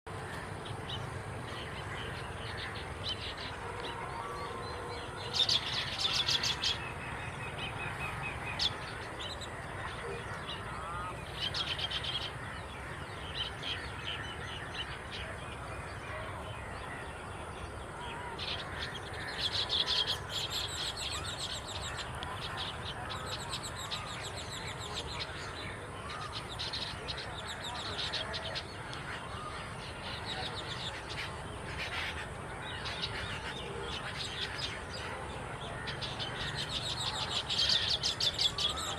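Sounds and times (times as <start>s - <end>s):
birds chattering with high chirps: 0.1s - 38.9s
outdoor background hiss: 0.1s - 38.9s.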